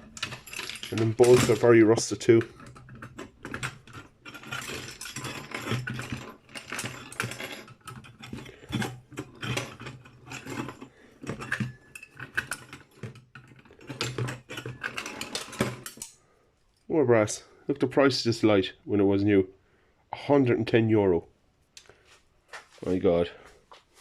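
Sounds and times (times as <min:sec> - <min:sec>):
metal parts clattering: 0:00.0 - 0:16.2.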